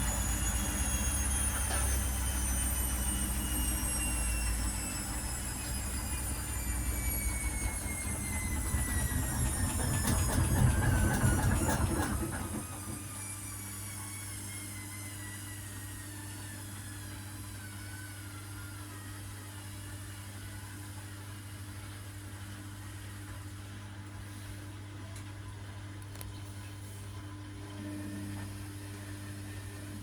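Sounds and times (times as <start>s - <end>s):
washing machine drum rattling: 6.2s - 13.1s.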